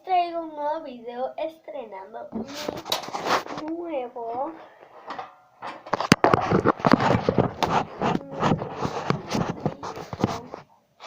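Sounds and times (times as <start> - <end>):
handling noise scraping and rustling: 2.4 - 10.8.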